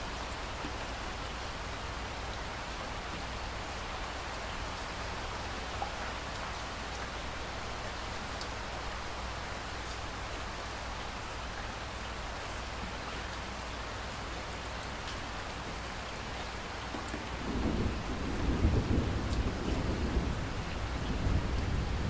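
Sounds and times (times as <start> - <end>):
steady rain falling: 0.0 - 22.0
thunder rumbling: 17.4 - 22.0.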